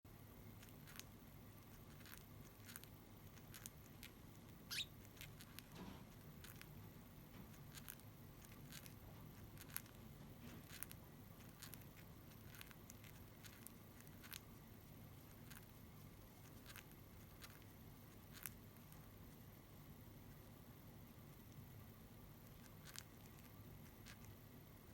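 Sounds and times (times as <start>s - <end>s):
budgerigar squeak: 4.7s - 4.9s.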